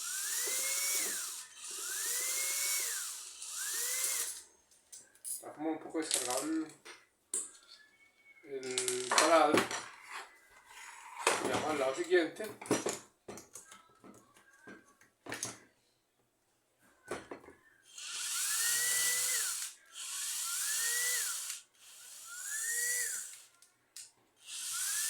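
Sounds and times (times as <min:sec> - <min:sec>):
cordless drill whining: 0:00.0 - 0:04.4, 0:17.9 - 0:23.5, 0:24.4 - 0:25.0.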